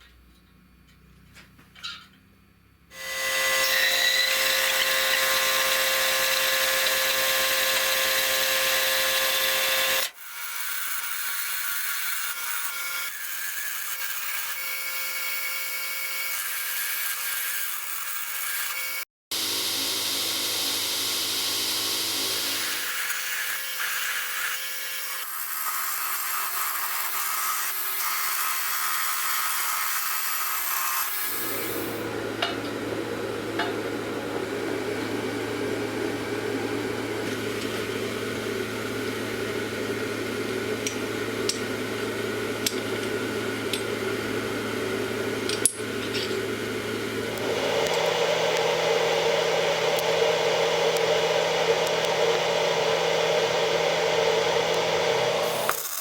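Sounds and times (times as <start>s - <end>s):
high-pitched grinding tool: 2.9s - 15.5s, 16.3s - 32.2s, 40.7s - 56.0s
power tool motor humming: 3.0s - 10.2s, 19.3s - 28.1s, 30.4s - 56.0s.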